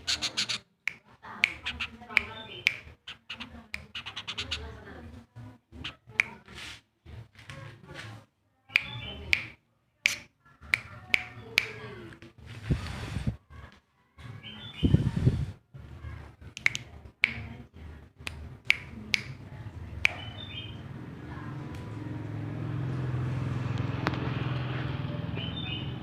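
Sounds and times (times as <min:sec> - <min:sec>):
bird chirping: 0:00.0 - 0:00.7, 0:01.4 - 0:04.8, 0:20.1 - 0:21.0, 0:25.3 - 0:26.0.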